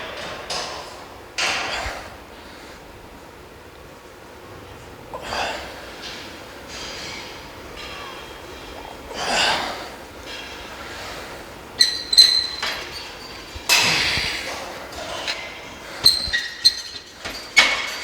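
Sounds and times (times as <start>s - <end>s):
heavy exhaling: 5.1s - 6.1s, 8.0s - 10.1s, 13.8s - 16.0s
metallic clinks of weight plates: 10.2s - 18.0s.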